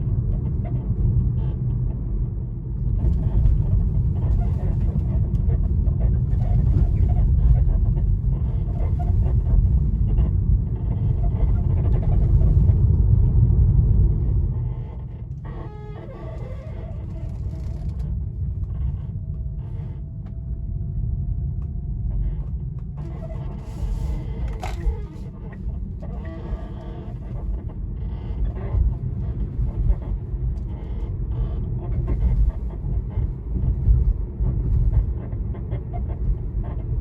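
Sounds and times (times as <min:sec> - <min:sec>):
low rumble: 0:00.0 - 0:37.0
thin steady squeak: 0:14.6 - 0:18.0, 0:23.0 - 0:30.0
rapid creak: 0:14.6 - 0:20.0, 0:23.0 - 0:30.2.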